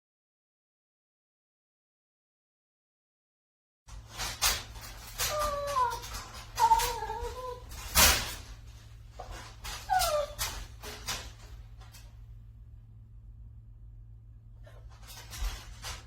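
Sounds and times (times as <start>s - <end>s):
dog whining: 5.2s - 8.3s, 9.6s - 11.3s.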